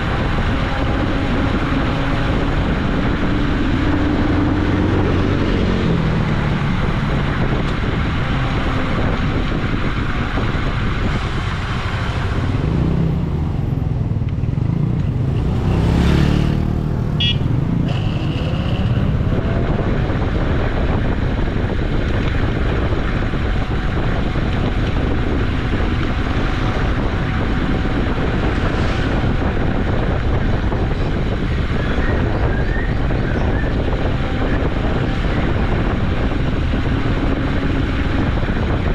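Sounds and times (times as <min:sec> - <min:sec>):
wind noise: 0:00.0 - 0:38.9
electric bicycle rumble: 0:16.6 - 0:38.9.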